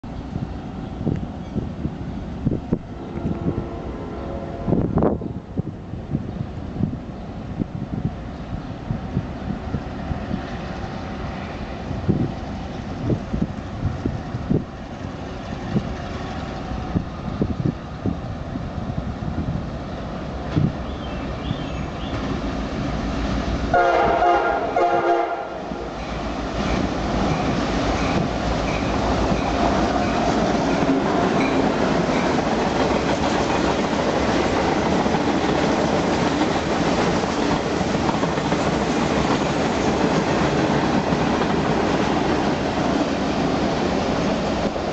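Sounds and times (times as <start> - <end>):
train rumbling past on rails: 0.0 - 44.9
locomotive horn blasts: 2.9 - 5.0, 23.7 - 25.9.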